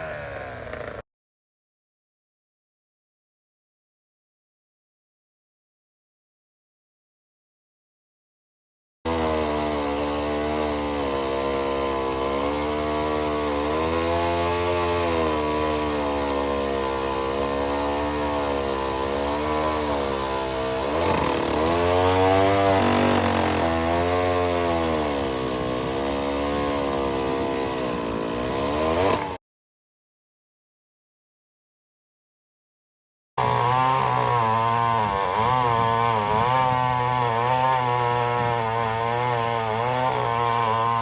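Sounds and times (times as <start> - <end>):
chainsaw engine running: 0.0 - 1.0, 9.1 - 29.4, 33.4 - 41.0.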